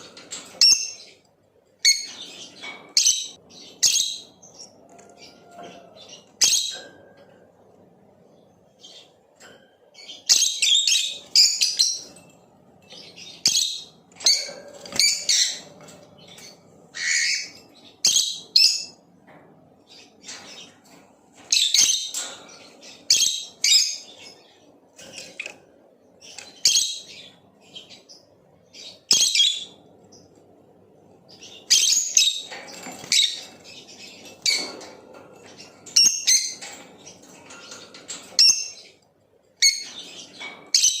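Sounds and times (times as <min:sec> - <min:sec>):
quiet bird chatter: 0:00.0 - 0:41.0.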